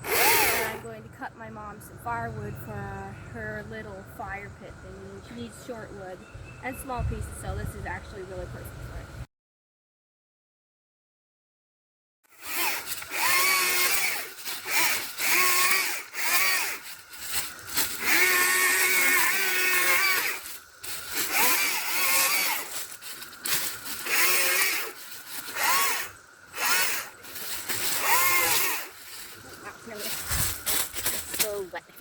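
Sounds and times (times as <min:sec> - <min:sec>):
electric chainsaw motor whine: 0:00.0 - 0:00.9, 0:12.3 - 0:31.5.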